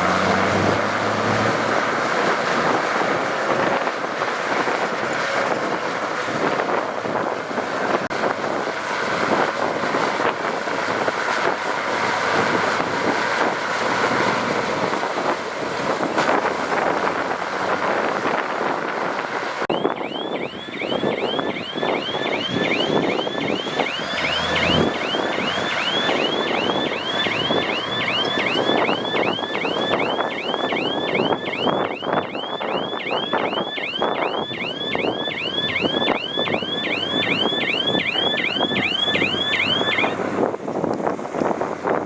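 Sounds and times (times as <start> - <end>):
reversing alarm chirping: 19.7 - 40.2.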